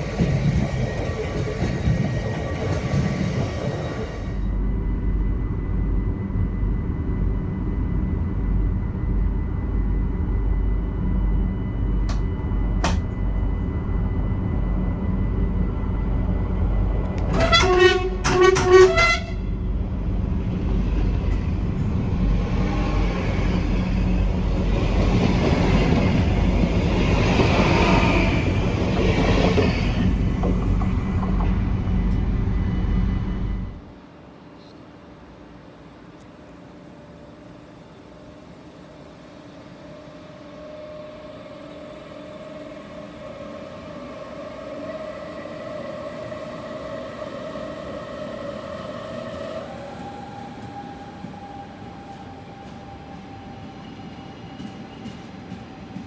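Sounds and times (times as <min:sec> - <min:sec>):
train rumbling along track: 0:00.0 - 0:56.0
train horn blasts: 0:17.2 - 0:19.7.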